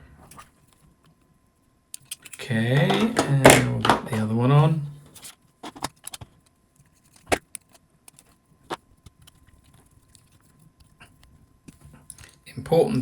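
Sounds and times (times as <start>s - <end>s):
plastic parts clicking together: 2.0s - 4.2s.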